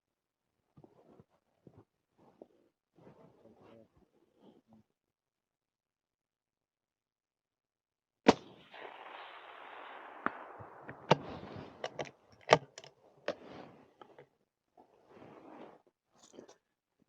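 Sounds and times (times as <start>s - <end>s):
suppressed rifle shot: 8.3s - 12.7s
rifle bolt clicks and clacks: 11.1s - 12.9s.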